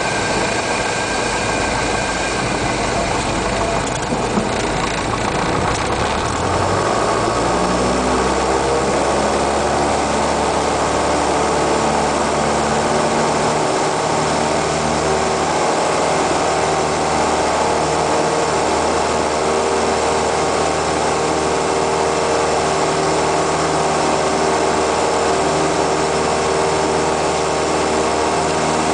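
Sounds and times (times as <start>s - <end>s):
light aircraft engine and propeller: 0.0s - 28.9s.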